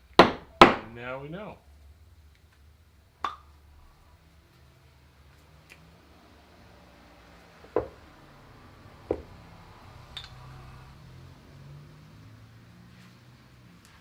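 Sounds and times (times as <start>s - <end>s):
engine parts knocked on workbench: 7.7s - 8.0s, 9.1s - 9.3s.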